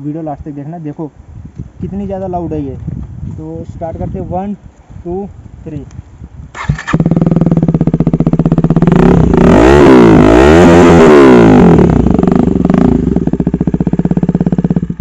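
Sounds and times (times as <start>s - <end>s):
motorcycle engine idling and revving: 6.2s - 15.0s.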